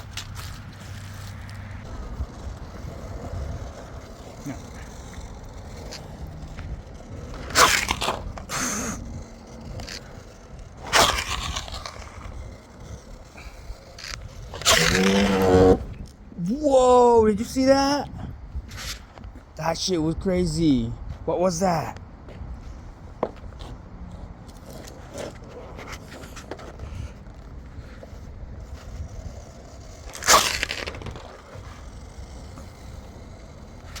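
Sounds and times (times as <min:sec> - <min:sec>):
electric board skidding and scraping: 0:00.0 - 0:16.5, 0:22.4 - 0:34.0
steady low rumble: 0:00.0 - 0:16.8.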